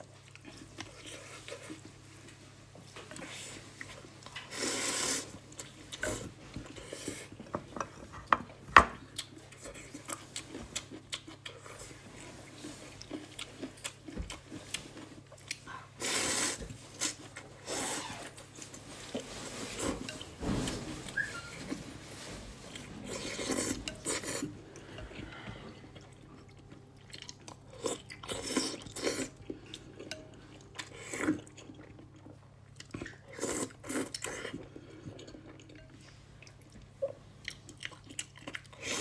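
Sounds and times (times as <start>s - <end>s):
slurping noodles: 4.5s - 5.4s, 16.0s - 18.4s.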